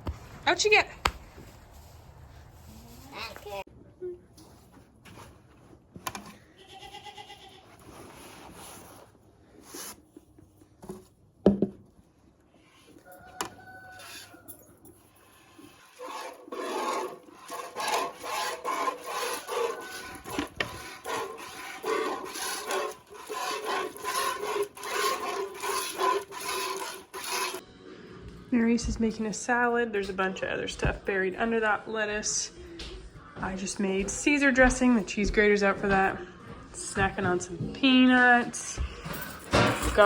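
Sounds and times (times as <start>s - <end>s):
milk squirting into metal pail: 15.5s - 27.6s.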